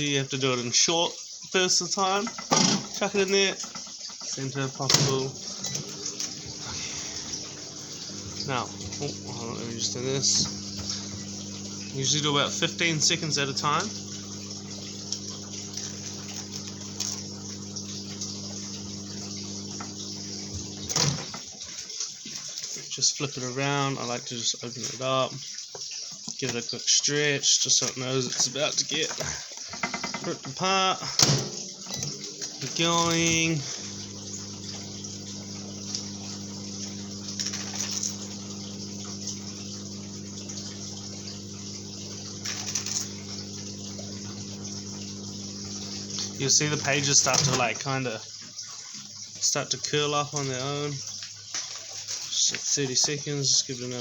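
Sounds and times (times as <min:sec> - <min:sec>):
microwave fan whirring: 0:04.9 - 0:21.4, 0:31.4 - 0:47.6
microwave oven humming: 0:05.0 - 0:21.4, 0:31.3 - 0:47.6
noisy bursts: 0:05.3 - 0:21.2.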